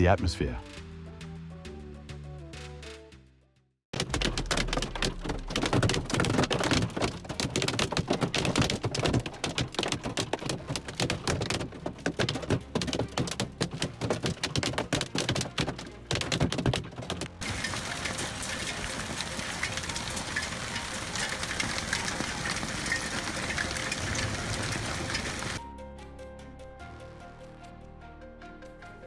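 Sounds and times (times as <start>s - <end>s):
patter of small sharp impacts: 4.0s - 25.6s.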